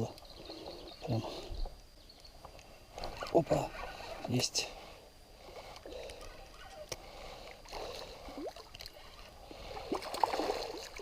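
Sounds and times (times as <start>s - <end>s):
water splashing and gurgling: 7.6s - 11.0s.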